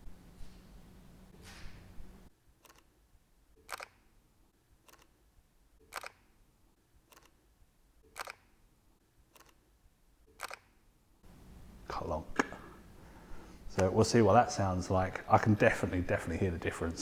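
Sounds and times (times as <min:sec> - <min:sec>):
camera shutter clicks: 0:03.7 - 0:04.0, 0:05.9 - 0:06.3, 0:08.1 - 0:08.5, 0:10.4 - 0:10.7.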